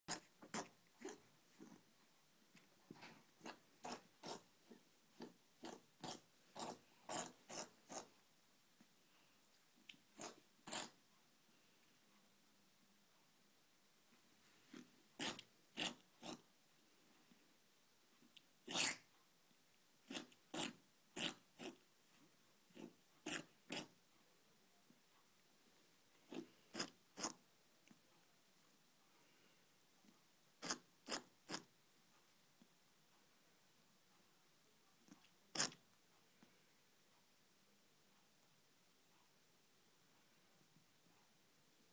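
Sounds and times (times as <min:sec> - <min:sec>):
rabbit sneezing: 0:35.5 - 0:35.8.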